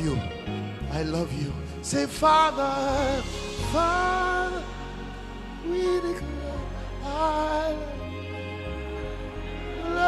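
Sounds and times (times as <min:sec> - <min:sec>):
person singing: 0:00.0 - 0:10.0
slow worship music chords: 0:00.0 - 0:10.0.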